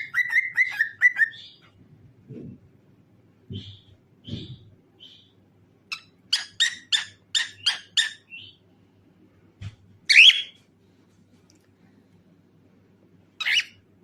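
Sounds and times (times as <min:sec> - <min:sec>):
cockatiel chirping and calling: 0:00.0 - 0:01.7, 0:05.9 - 0:08.6, 0:10.1 - 0:10.6, 0:13.4 - 0:13.8.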